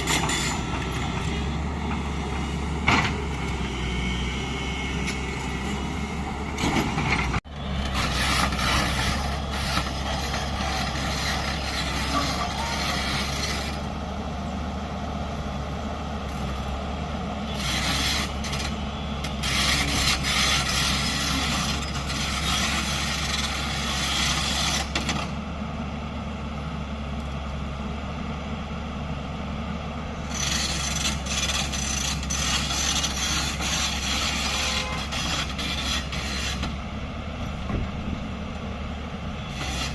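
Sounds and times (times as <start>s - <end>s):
diesel engine running: 0.0s - 39.9s
bucket scraping soil: 30.3s - 36.6s.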